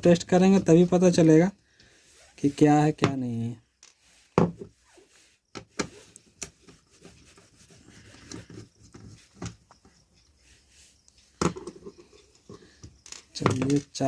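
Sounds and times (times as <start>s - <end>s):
soft rubbing: 0.4s - 3.0s, 3.9s - 12.8s
plastic clicks and knocks: 11.4s - 14.0s.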